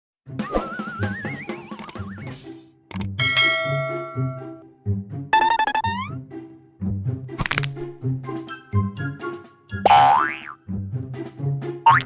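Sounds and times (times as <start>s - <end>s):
vibrato tone rising in pitch: 5.4s - 6.2s.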